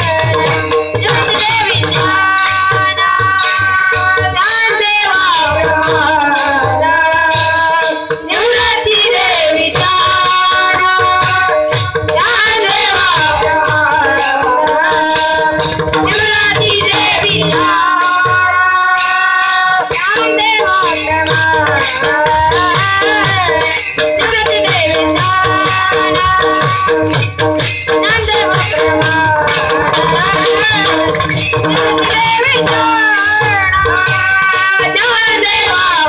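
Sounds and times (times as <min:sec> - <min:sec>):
boy singing devotional song: 0:00.0 - 0:36.0
drum strokes: 0:00.0 - 0:36.0
jingling percussion beat: 0:00.0 - 0:36.0.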